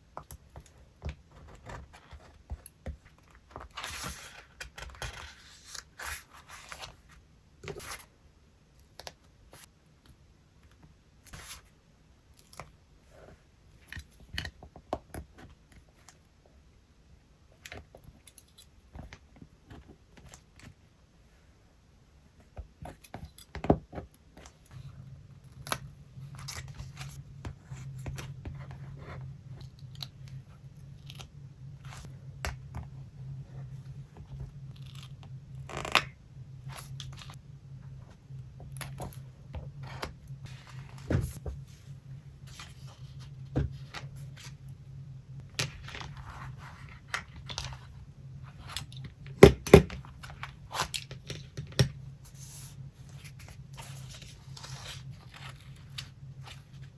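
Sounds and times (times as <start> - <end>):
steady low hum: 20.8 - 56.9.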